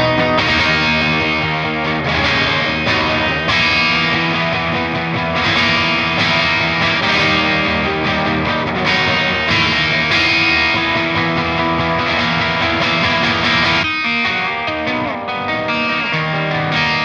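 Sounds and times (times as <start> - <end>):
distorted electric guitar chords: 0.0 - 17.0.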